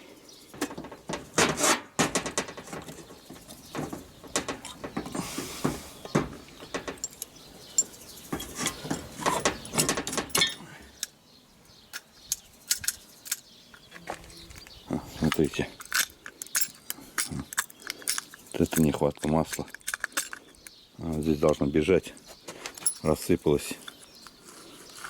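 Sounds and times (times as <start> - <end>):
metal parts clinking: 6.1 - 11.1, 11.9 - 14.1, 15.2 - 21.6, 22.2 - 24.2.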